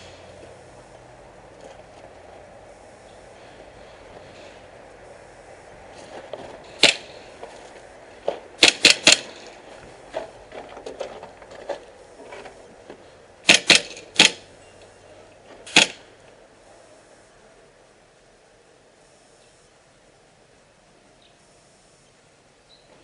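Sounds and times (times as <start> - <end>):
airsoft gun shots: 6.8 - 7.2, 8.6 - 9.4, 13.4 - 14.5, 15.7 - 16.1.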